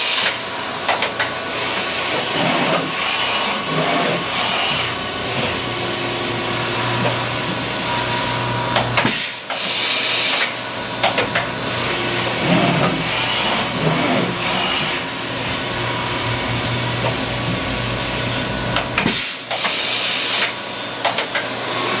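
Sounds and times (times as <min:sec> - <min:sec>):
industrial machinery hum: 0:00.0 - 0:22.0
loud hiss: 0:01.5 - 0:10.4, 0:11.6 - 0:20.3
machinery clicks and knocks: 0:10.3 - 0:11.5.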